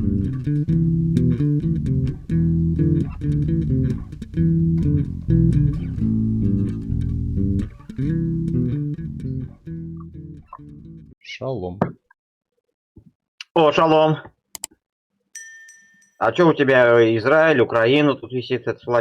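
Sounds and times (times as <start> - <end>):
guitar: 0.0 - 11.2
plucked bass guitar: 0.0 - 11.2.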